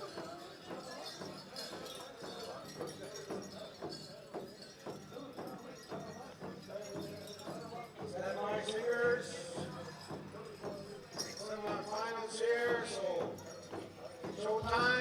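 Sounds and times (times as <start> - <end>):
dancers' bells jingling: 0.0 - 15.0
murmur of voices: 0.0 - 15.0.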